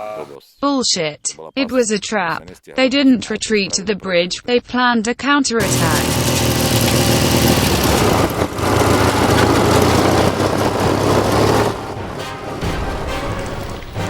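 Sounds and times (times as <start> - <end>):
loud background music: 11.7 - 14.0.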